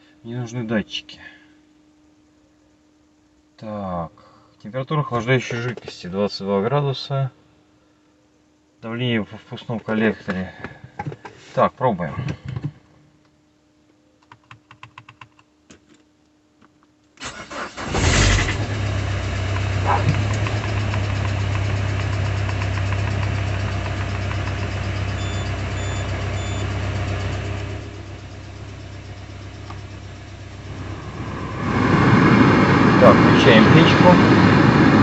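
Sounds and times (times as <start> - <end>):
faint hum: 0.0 - 35.0
car engine idling: 18.1 - 33.5.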